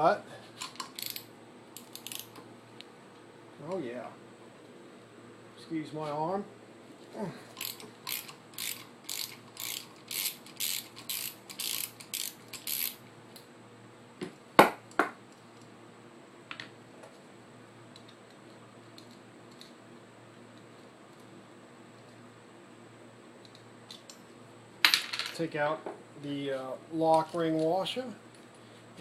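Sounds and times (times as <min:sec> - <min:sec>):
socket ratchet clicking: 0:00.6 - 0:02.4, 0:07.6 - 0:13.0.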